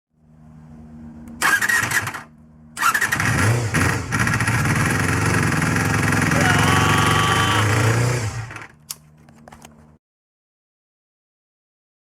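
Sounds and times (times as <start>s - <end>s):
motorcycle engine running and revving: 1.4s - 8.8s
motorcycle engine cranking: 1.4s - 9.0s.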